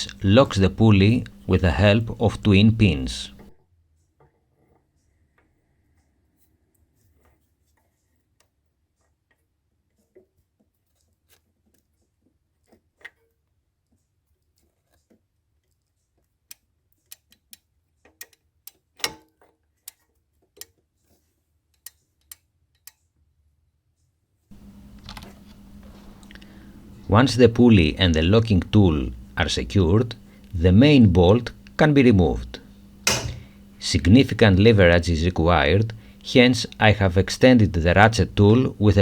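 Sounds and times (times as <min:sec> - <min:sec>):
light metal clicks and taps: 0:15.6 - 0:20.8, 0:32.8 - 0:33.6
loud metal knock: 0:33.1 - 0:33.5.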